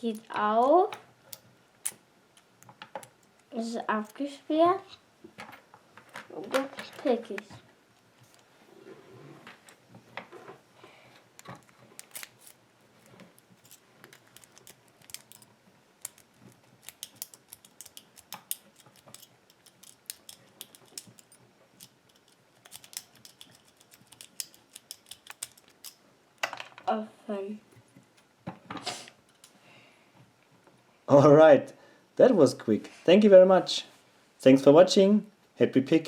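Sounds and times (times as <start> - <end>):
lock pick clicking and scraping: 11.4 - 26.0.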